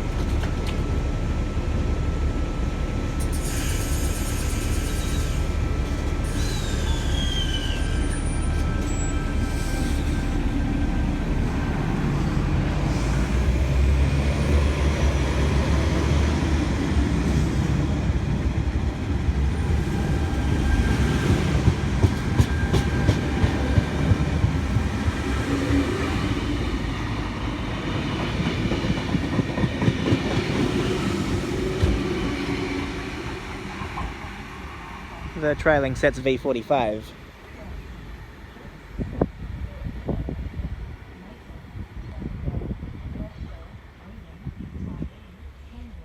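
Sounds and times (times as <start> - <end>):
electric train rumbling past: 0.0 - 46.0
train wheels clacking on rail joints: 21.2 - 24.9.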